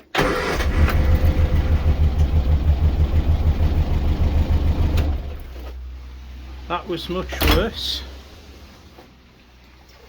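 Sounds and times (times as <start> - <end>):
engine idling unevenly: 0.3 - 5.5.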